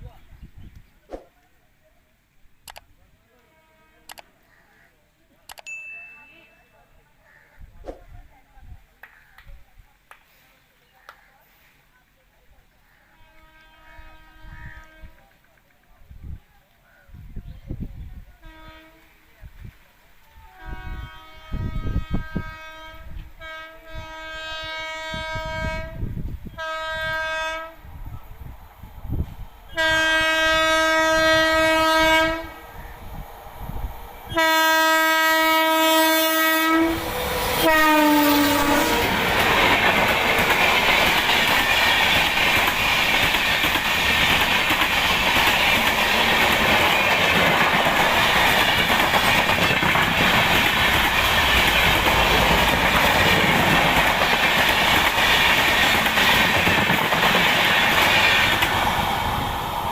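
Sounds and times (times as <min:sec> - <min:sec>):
locomotive horn blasts: 0:03.4 - 0:04.1, 0:13.2 - 0:15.2, 0:18.4 - 0:19.1, 0:20.4 - 0:27.9, 0:29.7 - 0:32.6, 0:34.3 - 0:39.2
train rushing past with wheel clatter: 0:20.8 - 0:59.9.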